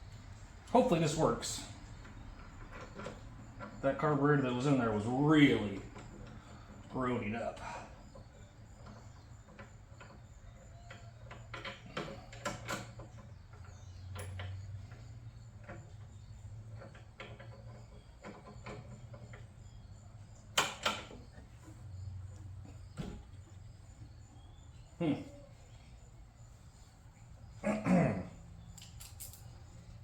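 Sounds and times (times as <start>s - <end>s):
hand tools and metal parts clicking: 0.7s - 22.8s, 28.6s - 30.0s.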